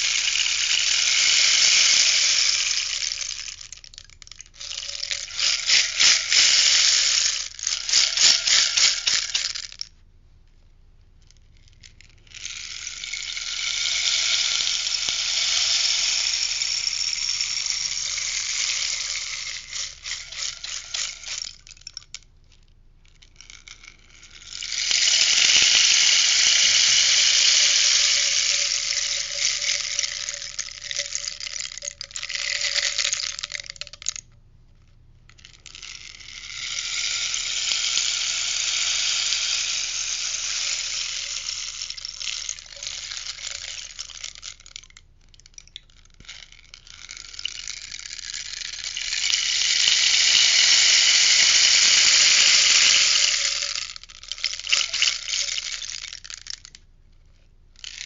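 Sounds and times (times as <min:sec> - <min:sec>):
rainstick beads trickling: 0:00.0 - 0:10.0, 0:11.2 - 0:34.3, 0:35.3 - 0:56.8, 0:57.8 - 0:58.0.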